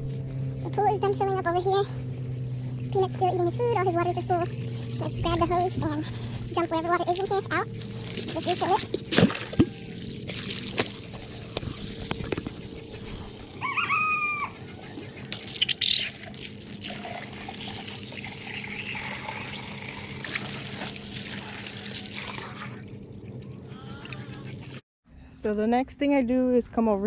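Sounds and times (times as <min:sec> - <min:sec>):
hose running water into container: 0:00.8 - 0:24.8
poultry call: 0:13.5 - 0:15.2.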